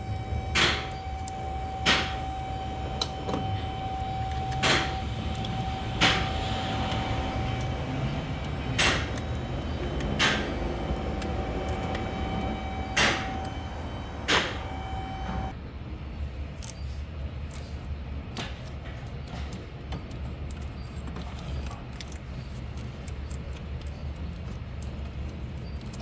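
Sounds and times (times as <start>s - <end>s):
steady high hum: 0.0s - 17.4s.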